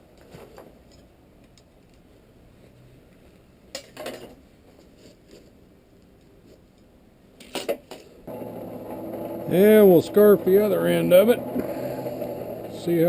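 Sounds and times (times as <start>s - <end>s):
low steady hum: 8.3s - 13.0s.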